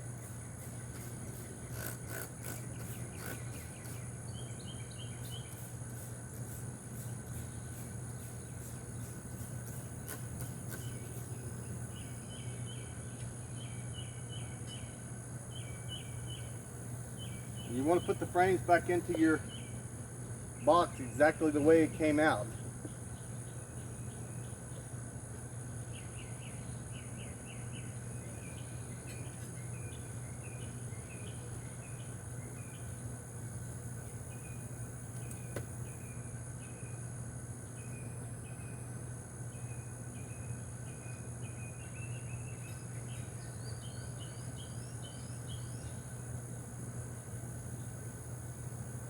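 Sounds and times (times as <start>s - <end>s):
insects trilling: 0.0s - 49.0s
bird chirping: 0.9s - 5.7s, 10.4s - 19.8s, 39.5s - 46.1s.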